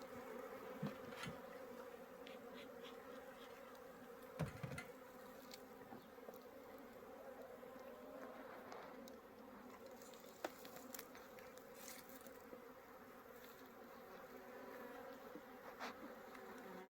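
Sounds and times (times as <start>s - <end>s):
honeybees buzzing: 0.0s - 16.9s.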